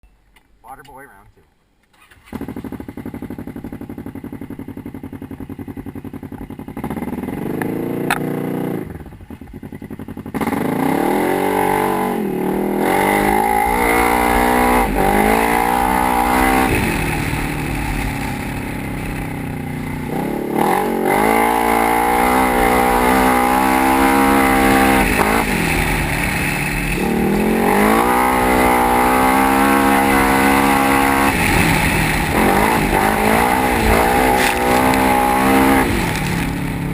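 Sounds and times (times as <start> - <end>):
engine revving up and down: 10.3 - 19.2, 20.0 - 36.9.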